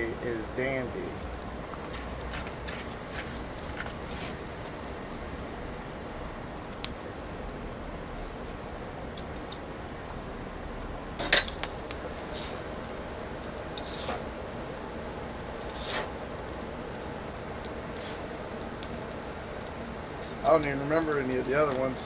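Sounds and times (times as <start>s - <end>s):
soft scrapes: 1.8s - 4.4s, 13.8s - 14.2s.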